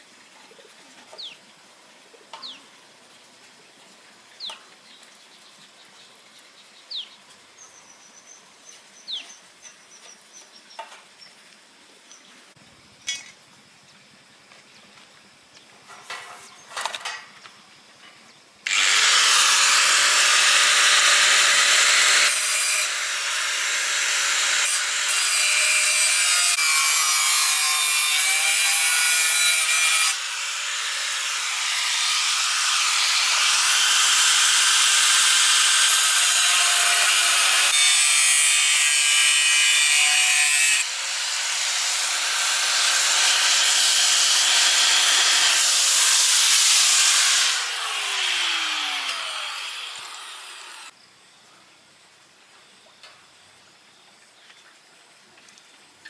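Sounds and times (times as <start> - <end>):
angle grinder cutting steel: 18.7 - 50.9.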